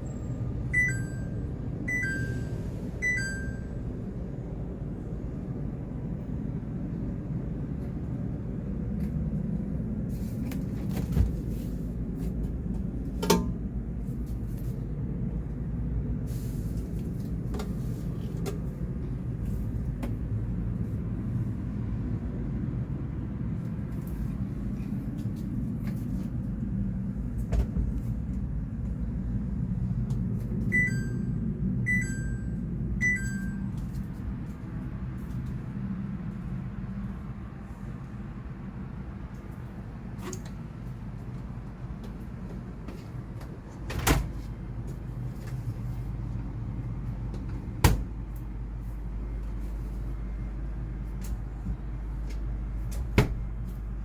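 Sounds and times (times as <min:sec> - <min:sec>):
two-note electronic beeps: 0:00.8 - 0:03.7, 0:31.9 - 0:33.7.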